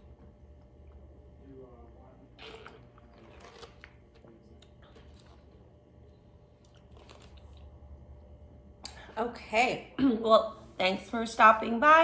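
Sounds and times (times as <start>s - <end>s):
person chewing food: 2.4s - 5.7s, 6.3s - 7.8s.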